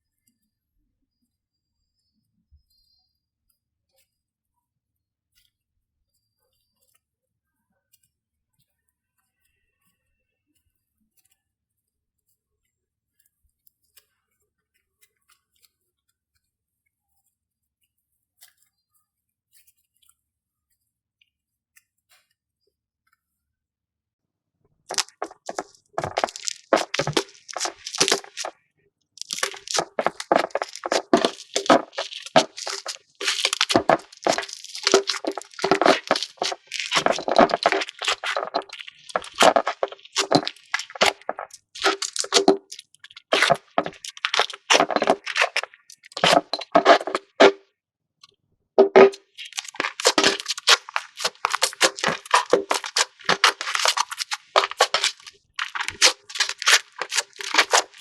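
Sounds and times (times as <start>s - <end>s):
slime squeezed by hand crackling: 24.9s - 28.5s, 29.2s - 47.6s, 48.9s - 58.0s.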